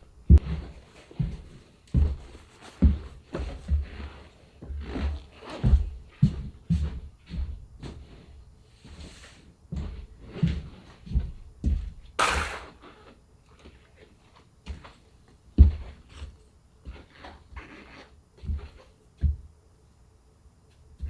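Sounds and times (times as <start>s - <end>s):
sharp hissing burst: 12.2s - 12.8s.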